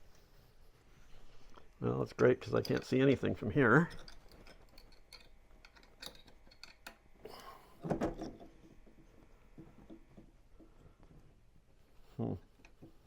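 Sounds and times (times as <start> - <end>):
person exhaling: 7.2 - 7.8.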